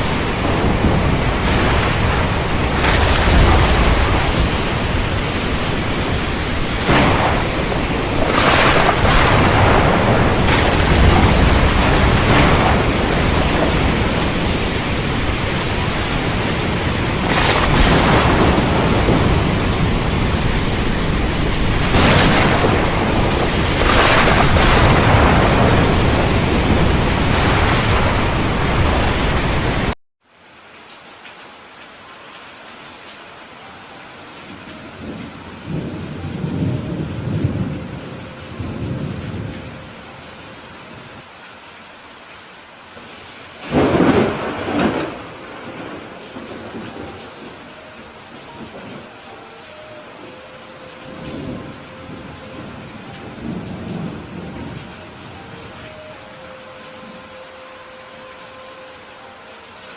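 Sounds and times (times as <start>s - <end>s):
thunder cracks and rumbles: 0.0s - 30.0s, 35.0s - 39.9s, 43.6s - 47.6s
heavy rain: 0.0s - 59.9s.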